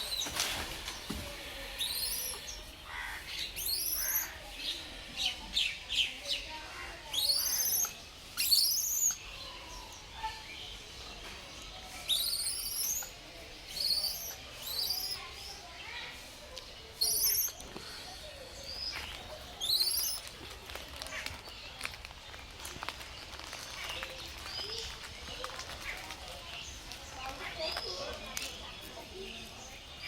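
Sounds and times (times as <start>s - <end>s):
baby monkey squeaking: 3.6s - 4.3s, 7.2s - 9.2s, 12.1s - 13.1s, 13.8s - 15.2s, 17.0s - 17.6s, 19.6s - 20.2s
low monkey chirps: 3.6s - 4.3s, 7.1s - 9.2s, 12.1s - 15.2s, 17.0s - 17.6s, 19.6s - 20.2s.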